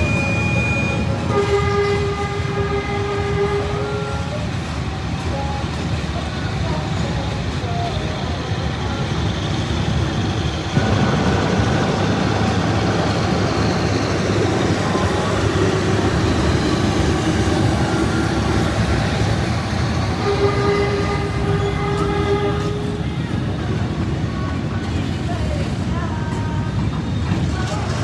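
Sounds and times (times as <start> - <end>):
held horn tone: 0.0 - 4.8, 13.3 - 23.4
train engine and rail noise: 0.0 - 28.0.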